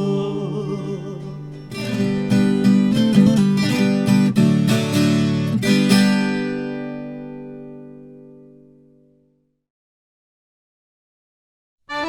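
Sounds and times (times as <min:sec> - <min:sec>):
guitar plucking and strumming: 0:00.0 - 0:09.4.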